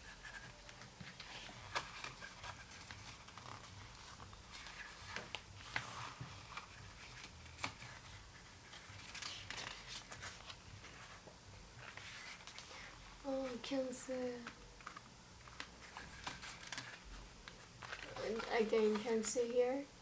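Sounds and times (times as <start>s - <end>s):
pages rustling as turned: 0.0s - 13.6s, 14.3s - 19.6s.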